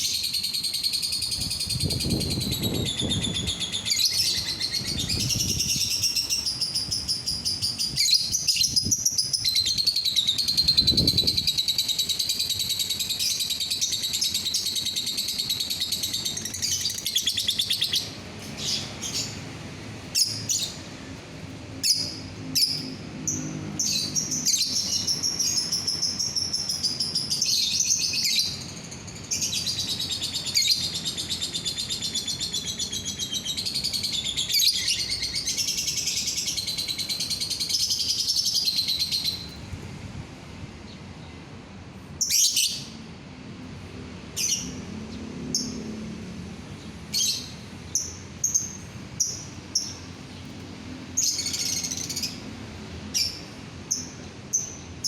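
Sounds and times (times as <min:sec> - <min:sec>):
bird chirping and trilling: 0:00.0 - 0:19.4, 0:20.1 - 0:20.8, 0:21.8 - 0:39.6, 0:42.2 - 0:43.0, 0:47.1 - 0:50.4, 0:51.2 - 0:52.4.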